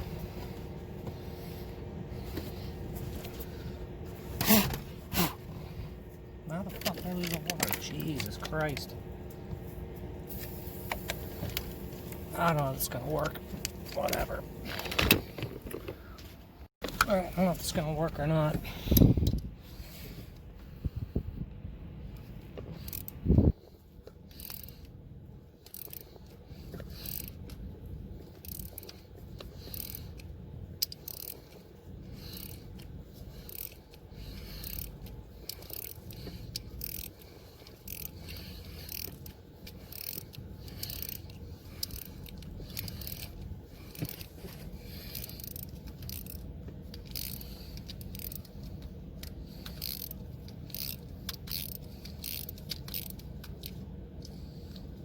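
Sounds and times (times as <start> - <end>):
ratchet wrench clicking: 22.7 - 23.2, 24.1 - 54.9.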